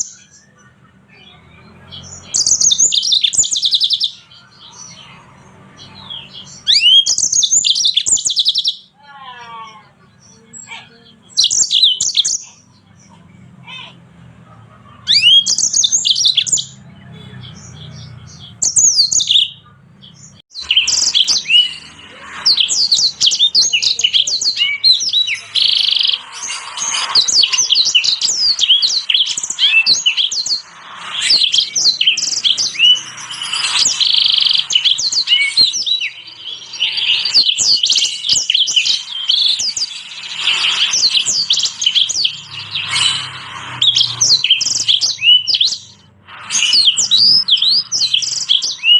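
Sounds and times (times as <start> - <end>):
canary singing twittering song: 0.0 - 48.9.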